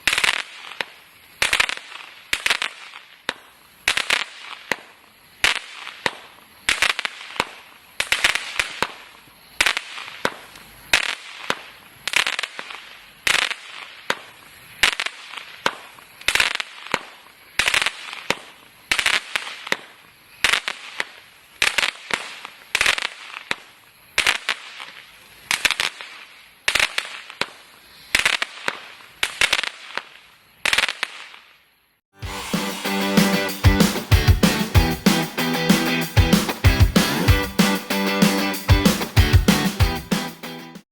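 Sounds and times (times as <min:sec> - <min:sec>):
firework shots crackling: 0:00.0 - 0:31.6.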